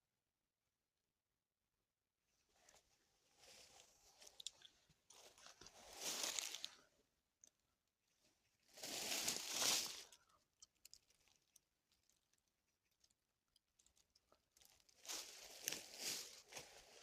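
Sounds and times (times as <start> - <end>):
rustling and crunching: 2.7 - 6.9, 8.7 - 13.1, 13.8 - 17.0.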